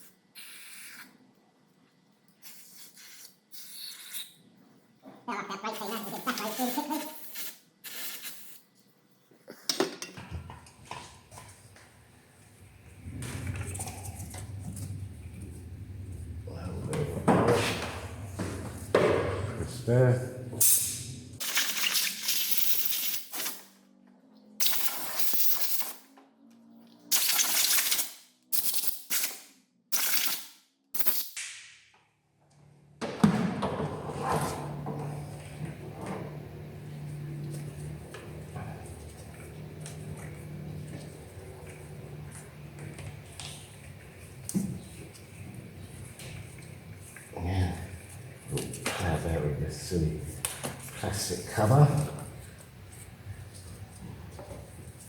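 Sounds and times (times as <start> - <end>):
aerosol spray hissing: 0.0 - 1.1, 2.4 - 4.3, 6.0 - 8.7
steady low hum: 10.4 - 21.4, 34.2 - 55.0
low rumble: 12.4 - 20.5.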